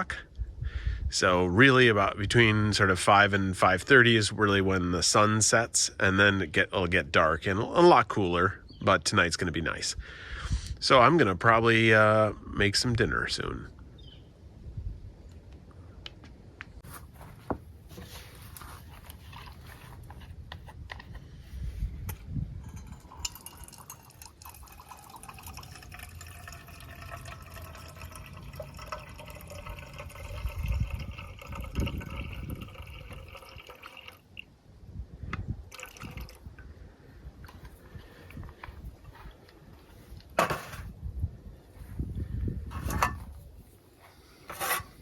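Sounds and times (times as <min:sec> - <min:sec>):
water pouring into container: 0:22.8 - 0:34.4, 0:35.7 - 0:36.5.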